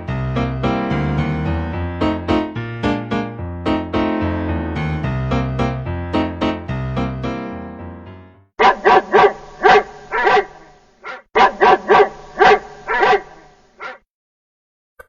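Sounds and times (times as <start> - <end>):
piano music: 0.0 - 8.5
dog barking: 8.6 - 14.0.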